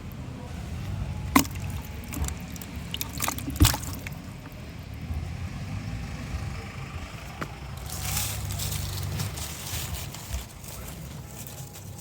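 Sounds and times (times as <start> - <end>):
low steady rumble: 0.0 - 12.0
water sloshing and splashing: 1.2 - 5.0.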